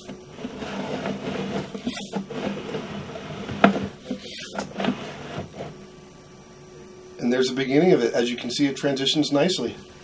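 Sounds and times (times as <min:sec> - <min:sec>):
cable scraping rattle in pipe: 0:00.0 - 0:05.9.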